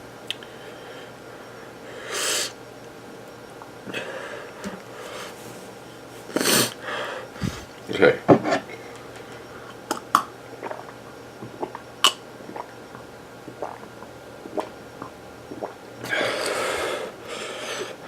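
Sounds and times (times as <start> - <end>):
forceful breath through mouth: 6.8 - 7.8.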